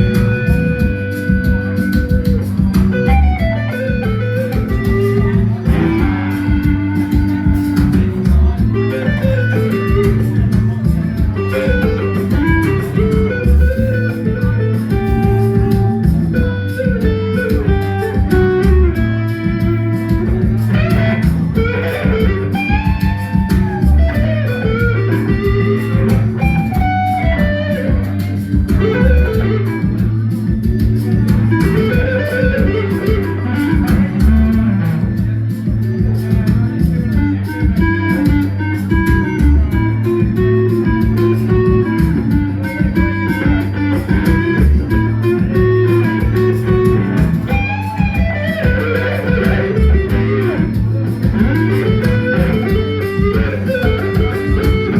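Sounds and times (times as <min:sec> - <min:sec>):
bass guitar: 0:00.0 - 0:54.9
electric guitar playing blues: 0:00.0 - 0:54.9
steady drum beat: 0:00.0 - 0:54.9.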